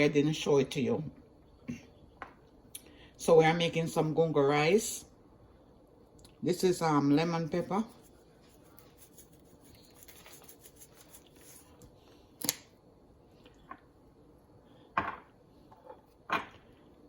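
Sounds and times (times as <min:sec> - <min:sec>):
grains pattering from shaker: 0:08.0 - 0:11.7.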